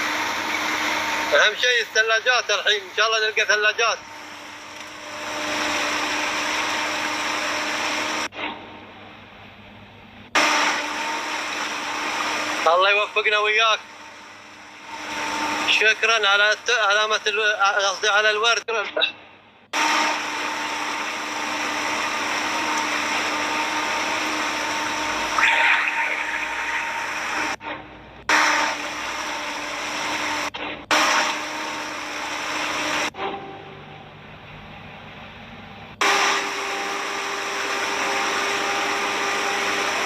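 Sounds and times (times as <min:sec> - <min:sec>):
boat engine drone: 0:20.0 - 0:40.0.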